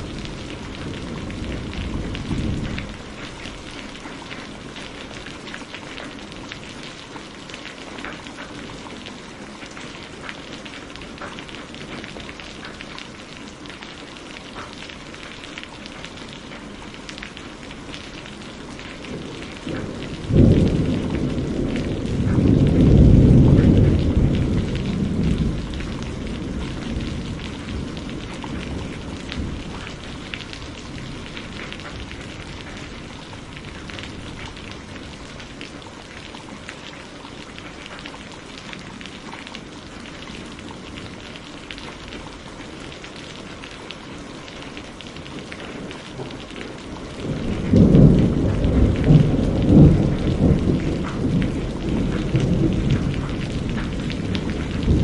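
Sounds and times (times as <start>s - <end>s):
thunder rumbling: 0.0s - 6.6s, 18.2s - 36.9s, 44.8s - 55.0s
steady rain: 0.0s - 55.0s.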